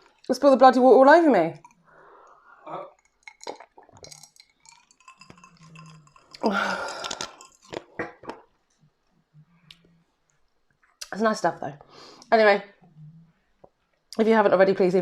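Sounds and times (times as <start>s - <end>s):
glass and tableware clinking: 2.9s - 8.4s.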